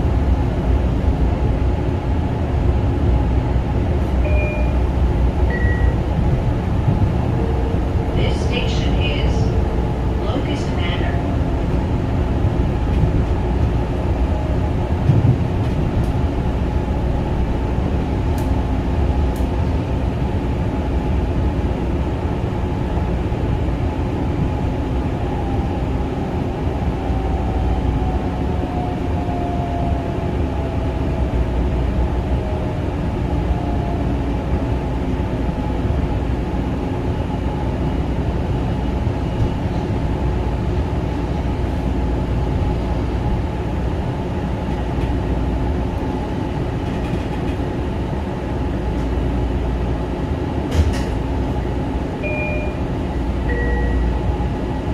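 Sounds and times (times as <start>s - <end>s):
electric train rumbling: 0.0s - 54.9s.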